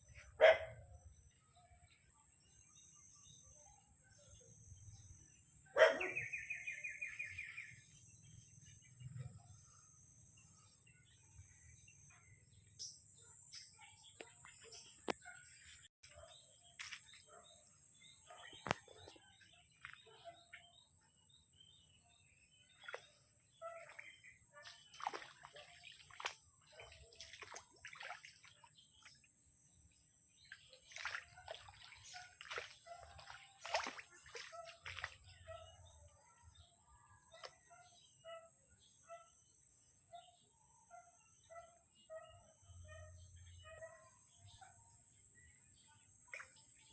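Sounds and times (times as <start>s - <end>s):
birds chirping: 10.7s - 29.2s, 30.4s - 36.7s.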